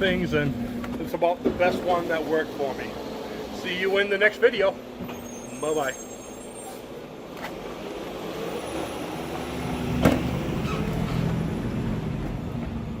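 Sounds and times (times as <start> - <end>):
motor vehicle passing by: 6.6 - 13.0.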